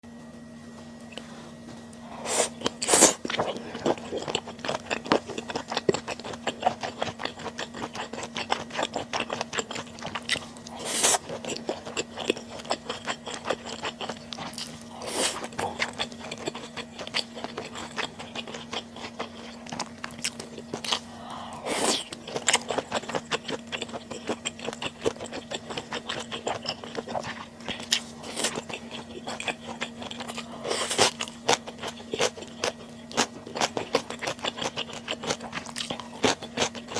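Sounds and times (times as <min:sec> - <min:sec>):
close chewing and biting: 0:02.2 - 0:36.9.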